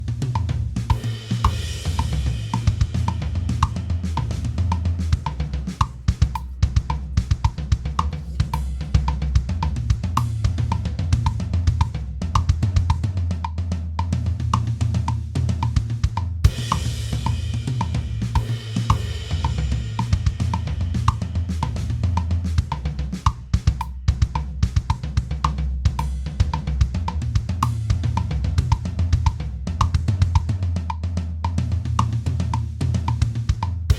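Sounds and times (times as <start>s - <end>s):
music with drum beat and bass: 0.0s - 33.9s.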